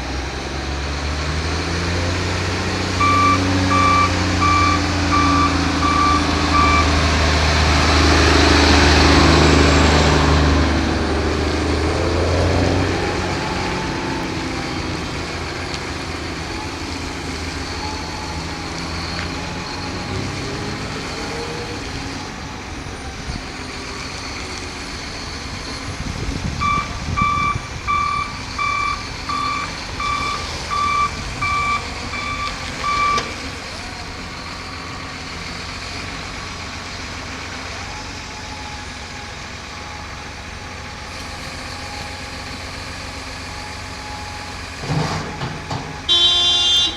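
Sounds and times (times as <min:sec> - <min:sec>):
diesel engine working: 0:00.0 - 0:46.9
reversing alarm beeps: 0:02.9 - 0:07.1, 0:17.5 - 0:20.2, 0:26.6 - 0:33.4, 0:45.4 - 0:46.9.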